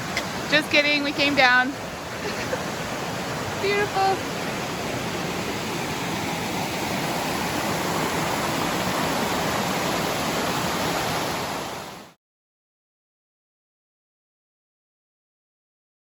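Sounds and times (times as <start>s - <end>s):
waterfall roaring: 0.0s - 12.1s.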